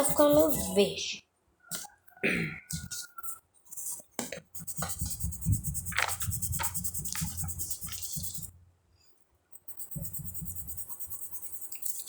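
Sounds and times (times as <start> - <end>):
pencil scratching on paper: 0.0 - 0.9, 2.7 - 8.5, 9.6 - 12.0.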